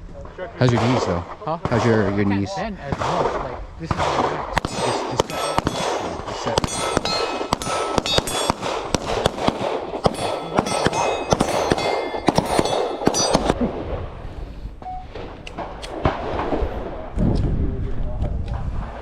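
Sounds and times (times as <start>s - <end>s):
rapid gunfire: 2.9s - 13.6s.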